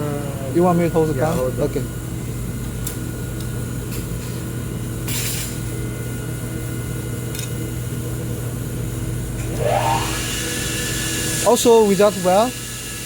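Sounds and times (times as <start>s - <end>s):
laser welder machine hum: 9.0s - 13.0s.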